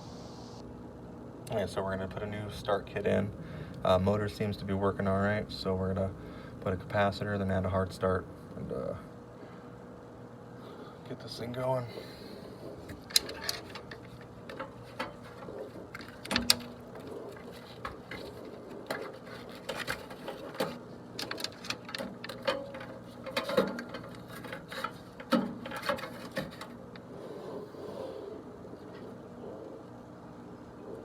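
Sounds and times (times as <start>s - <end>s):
faint steady hum: 0.0s - 31.0s
metallic clicks and rattles of tools: 12.9s - 16.7s, 18.9s - 26.7s.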